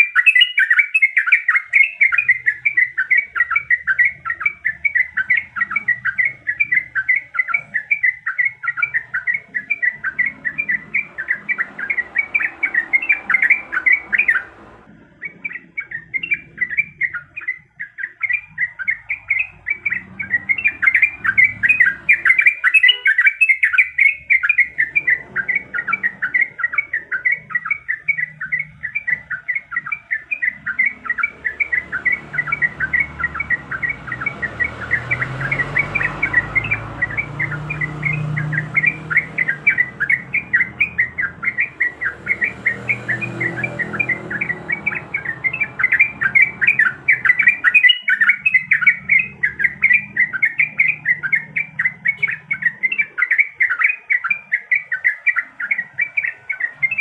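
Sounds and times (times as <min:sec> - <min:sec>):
bulbul chattering song: 0:00.0 - 0:57.0.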